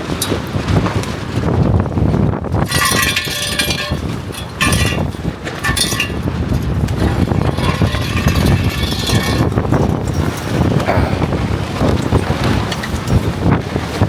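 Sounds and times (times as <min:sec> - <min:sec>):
strong wind buffeting microphone: 0:00.0 - 0:14.0
metallic rattling and scraping: 0:02.6 - 0:11.3.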